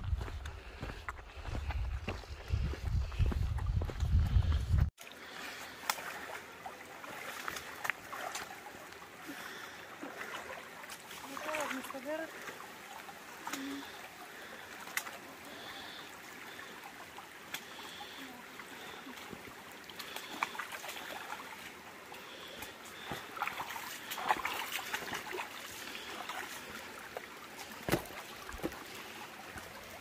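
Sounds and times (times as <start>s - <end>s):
stream water trickling: 4.9s - 30.0s
small splashes and knocks: 5.0s - 13.9s, 14.7s - 15.3s, 19.1s - 21.8s, 22.5s - 30.0s.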